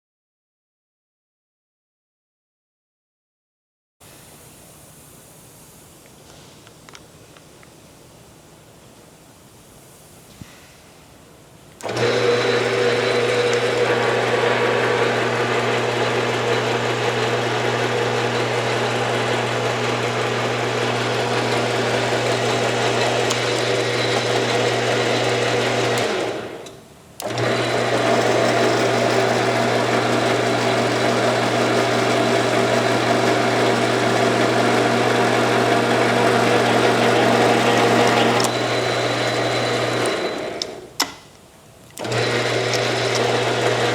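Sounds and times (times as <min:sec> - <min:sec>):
lathe motor humming with whine: 0:11.8 - 0:40.9, 0:42.0 - 0:43.9.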